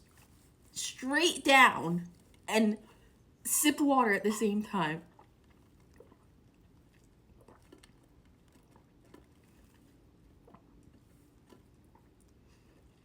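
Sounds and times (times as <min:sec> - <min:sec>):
person sipping and swallowing water: 0:05.1 - 0:13.0.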